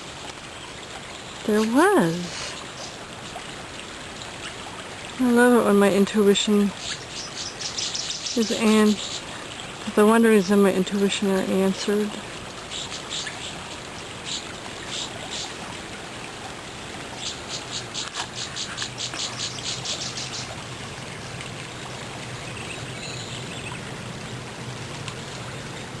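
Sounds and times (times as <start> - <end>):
creek water running: 0.0 - 26.0
small birds chirping: 6.7 - 9.4, 12.7 - 15.6, 17.2 - 20.6, 22.4 - 23.9.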